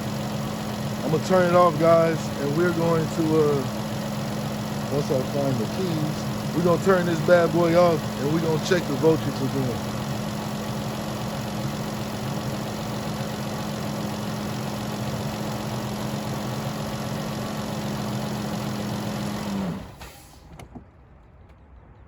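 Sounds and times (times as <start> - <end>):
car engine idling: 0.0 - 20.8.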